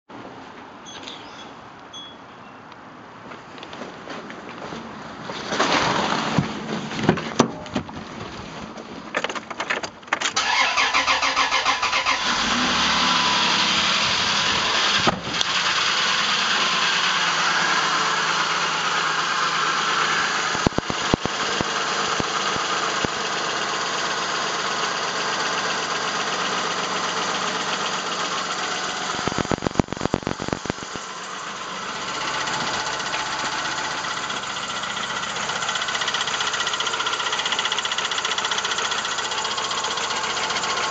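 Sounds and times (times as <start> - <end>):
engine cranking and running: 10.0 - 40.9.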